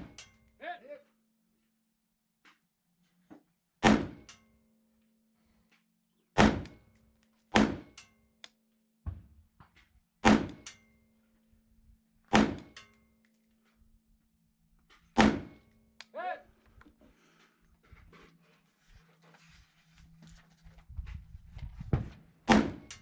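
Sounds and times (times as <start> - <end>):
rifle shots: 3.8 - 4.2, 6.4 - 6.8, 7.5 - 7.9, 10.2 - 10.6, 12.3 - 12.7, 15.2 - 15.6, 22.5 - 22.9.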